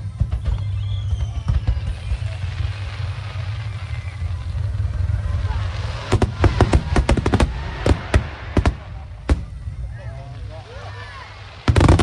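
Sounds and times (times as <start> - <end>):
fireworks crackling: 1.6 - 12.0
fireworks booming: 6.1 - 10.0, 11.7 - 12.0.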